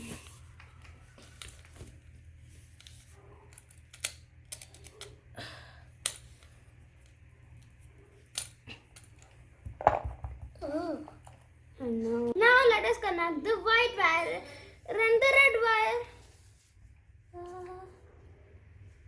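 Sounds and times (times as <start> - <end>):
plastic parts clicking and tapping: 3.5 - 5.1.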